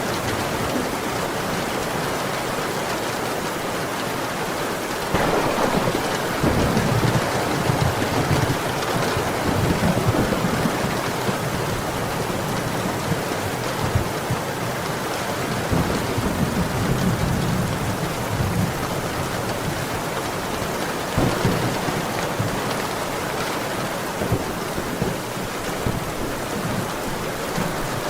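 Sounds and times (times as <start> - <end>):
heavy rain falling: 0.0 - 28.0.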